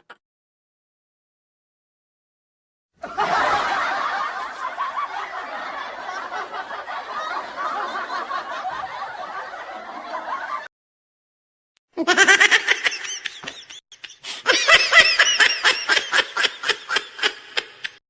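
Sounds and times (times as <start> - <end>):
crowd laughing: 3.0 - 10.7, 12.0 - 18.0.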